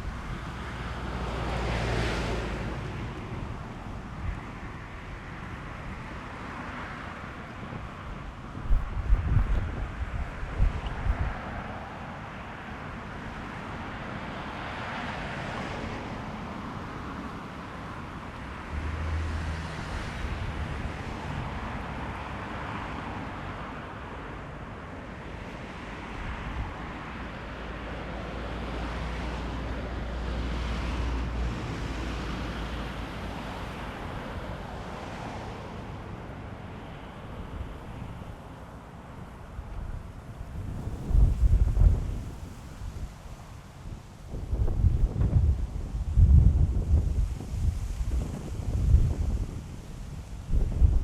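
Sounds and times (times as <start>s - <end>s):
strong wind gusting on microphone: 0.0s - 12.6s, 39.5s - 51.0s.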